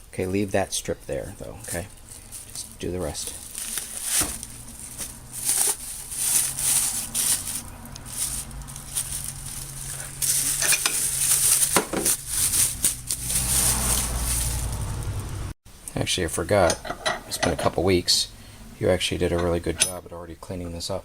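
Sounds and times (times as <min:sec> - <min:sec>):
steady low hum: 0:00.0 - 0:21.0
masking tape peeling and tearing: 0:03.4 - 0:15.3.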